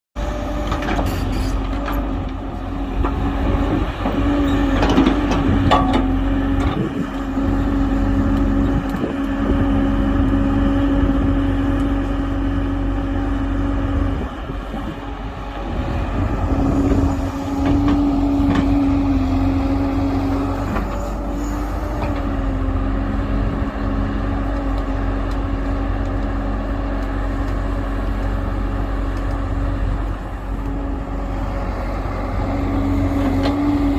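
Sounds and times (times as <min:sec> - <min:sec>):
excavator diesel engine running: 0:00.2 - 0:33.9
steady whine: 0:00.7 - 0:23.7.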